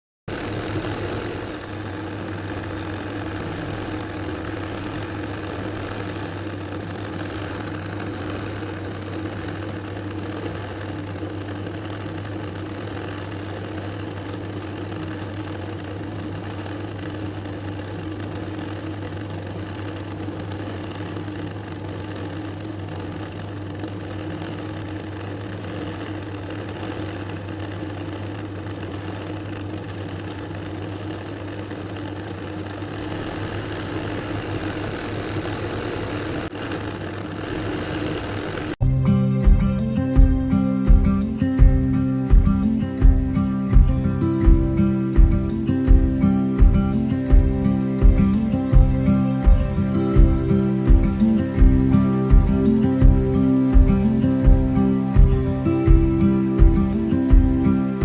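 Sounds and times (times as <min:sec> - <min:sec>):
sewing machine motor humming: 0:00.2 - 0:38.8.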